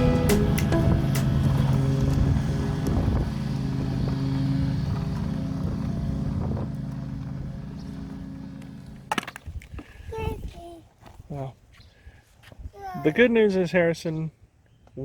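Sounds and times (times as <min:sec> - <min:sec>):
vehicle engine humming: 0:00.0 - 0:09.4.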